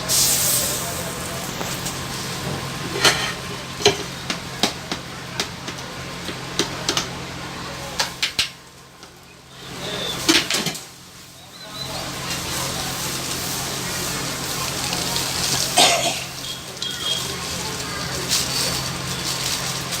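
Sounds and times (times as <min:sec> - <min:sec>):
food sizzling: 0:00.0 - 0:20.0
metal spatula scraping griddle: 0:02.8 - 0:03.4.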